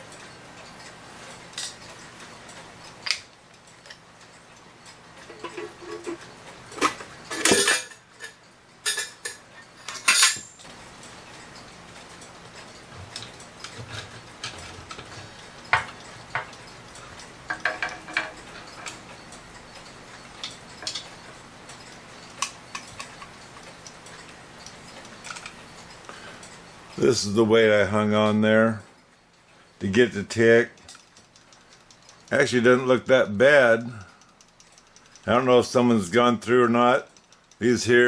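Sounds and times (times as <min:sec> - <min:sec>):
metal clock parts clattering: 0:05.1 - 0:10.7, 0:12.7 - 0:26.3
small metallic clicks and taps: 0:11.9 - 0:26.6, 0:30.7 - 0:32.4, 0:34.1 - 0:35.3, 0:37.0 - 0:37.7.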